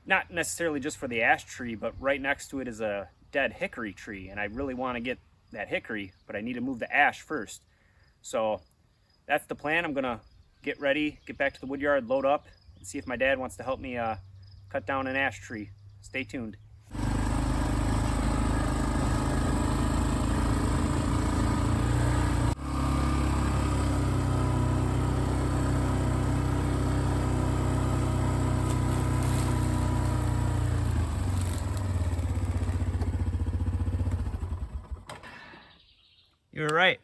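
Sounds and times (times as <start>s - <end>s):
atv engine running: 16.9s - 35.2s.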